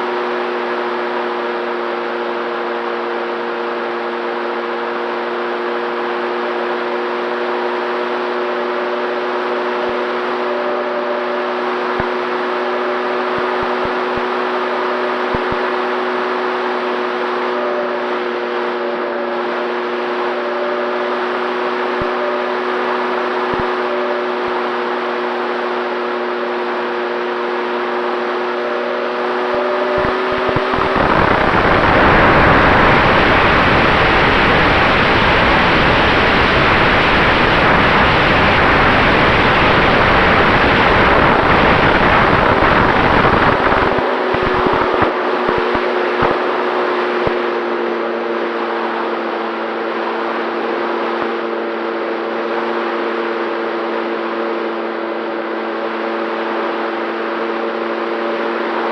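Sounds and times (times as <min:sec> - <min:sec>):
electric motor whine: 0:00.0 - 0:58.9
wind rush: 0:29.8 - 0:46.6.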